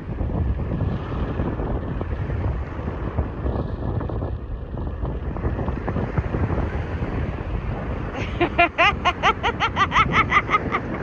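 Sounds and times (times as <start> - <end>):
wind buffeting microphone: 0.0 - 11.0
ocean surf: 5.0 - 11.0.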